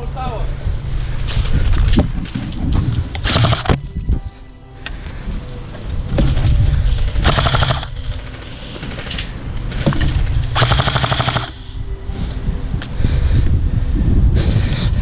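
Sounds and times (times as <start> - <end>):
wind rumble on microphone: 0.0 - 15.0
airsoft gun firing bursts: 3.2 - 3.8, 7.2 - 9.1, 10.5 - 11.6.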